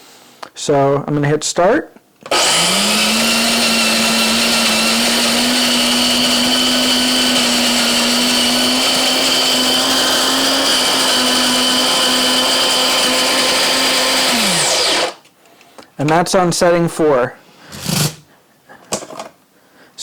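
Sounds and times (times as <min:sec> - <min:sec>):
coffee grinder running: 0:02.3 - 0:15.2
motor winding down: 0:02.3 - 0:15.2.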